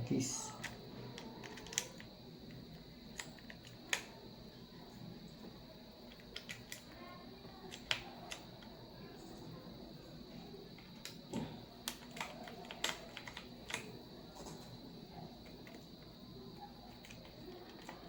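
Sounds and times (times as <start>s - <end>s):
keycaps clicking onto keyboard: 0.6s - 2.1s, 11.9s - 13.9s.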